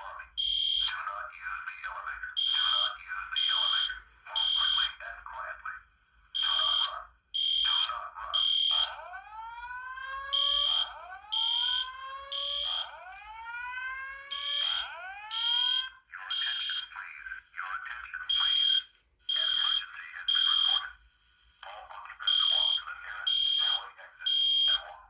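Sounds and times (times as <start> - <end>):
recorded evacuation message: 0.0 - 25.0
fire alarm horn beeps: 0.4 - 0.9, 2.4 - 5.0, 6.4 - 16.9, 18.3 - 20.8, 22.3 - 24.8.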